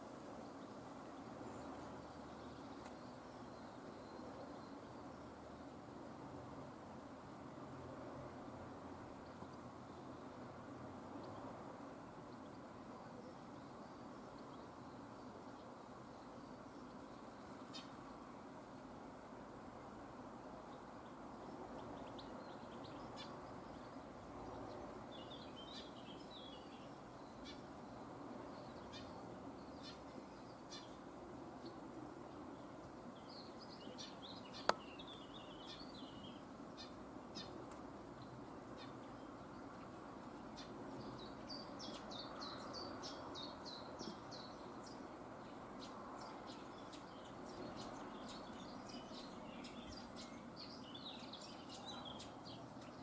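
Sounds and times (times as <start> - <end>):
small birds chirping: 11.2 - 18.4, 20.5 - 53.0.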